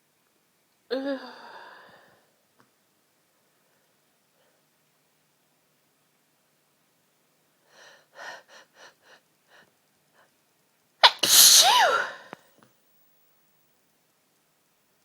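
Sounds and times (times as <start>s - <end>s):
person sneezing: 11.0s - 12.4s.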